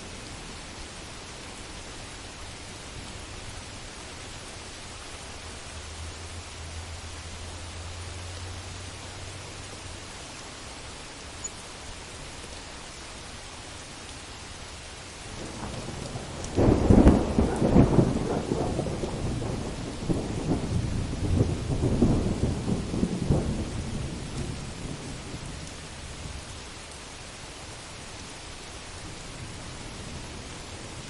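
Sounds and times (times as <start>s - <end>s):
heavy rain: 0.0s - 31.0s
thunder cracking and rolling: 15.4s - 25.1s.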